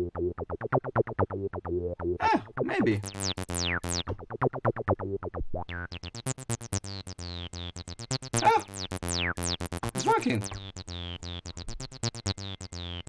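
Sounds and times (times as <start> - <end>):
synth acid bassline: 2.8 - 13.0.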